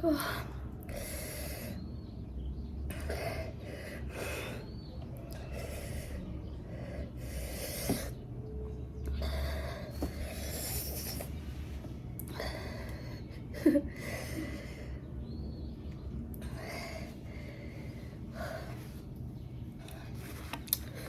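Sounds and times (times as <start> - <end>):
person breathing hard: 0.0 - 2.0, 2.9 - 8.2, 9.1 - 11.4, 12.2 - 15.2, 16.4 - 19.2.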